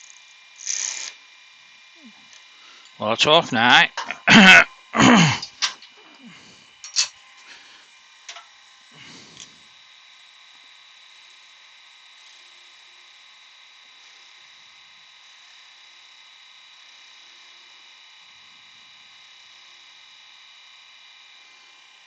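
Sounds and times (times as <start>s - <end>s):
faint electrical hum: 0.0s - 13.2s.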